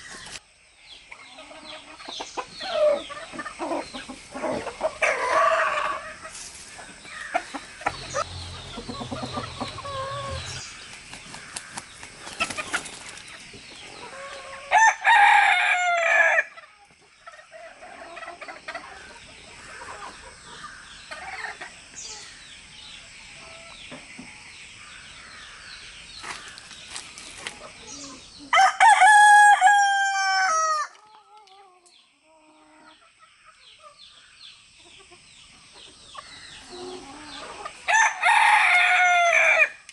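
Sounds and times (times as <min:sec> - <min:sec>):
hens clucking: 0:01.1 - 0:14.7, 0:16.4 - 0:22.0, 0:34.8 - 0:37.9
rooster crowing: 0:07.9 - 0:10.7, 0:14.7 - 0:16.5, 0:28.5 - 0:30.9, 0:37.9 - 0:39.8.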